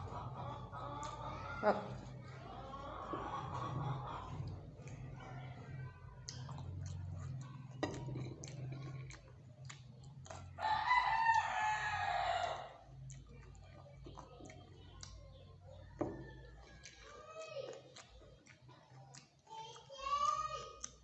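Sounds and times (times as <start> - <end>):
chewing crunchy chips: 3.5 - 21.0
rooster crowing: 10.6 - 12.8.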